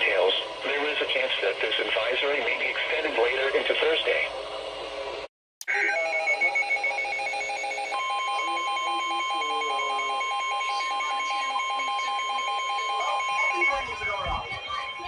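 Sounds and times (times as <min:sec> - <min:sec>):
pulsing two-pitch alert tone: 0:05.6 - 0:15.0
steady alert tone: 0:05.6 - 0:15.0.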